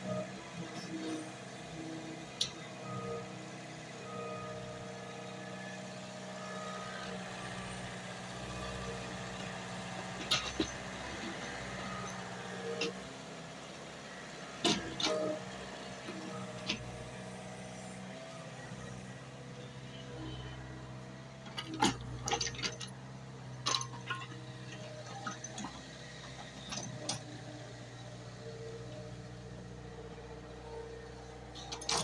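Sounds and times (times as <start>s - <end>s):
excavator engine running: 6.1s - 32.0s.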